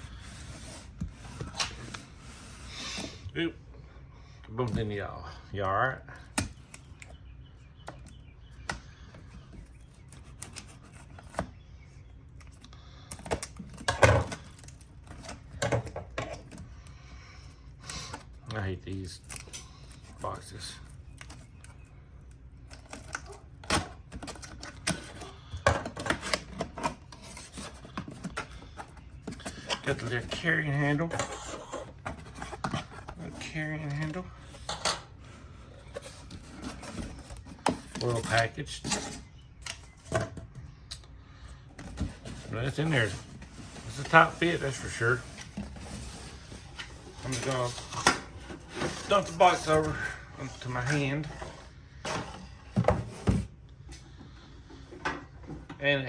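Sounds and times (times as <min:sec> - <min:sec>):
rustling scraping and knocks: 0:24.1 - 0:39.3, 0:41.8 - 0:55.8.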